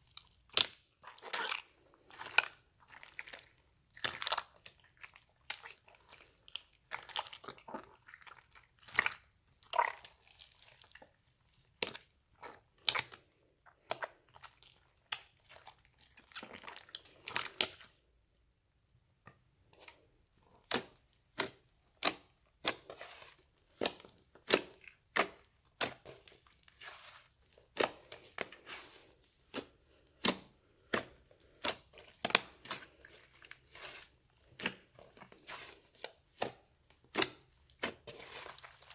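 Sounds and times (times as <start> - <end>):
slime popping and crackling: 20.7 - 38.9.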